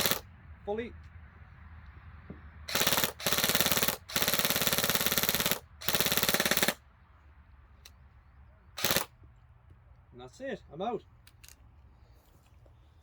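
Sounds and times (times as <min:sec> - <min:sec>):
airsoft gun firing automatic bursts: 0:00.0 - 0:00.2, 0:02.7 - 0:06.8, 0:08.8 - 0:09.1.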